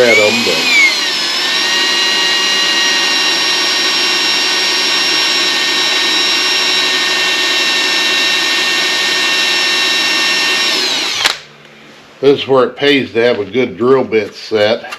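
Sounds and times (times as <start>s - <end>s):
electric drill whining: 0.0s - 11.5s.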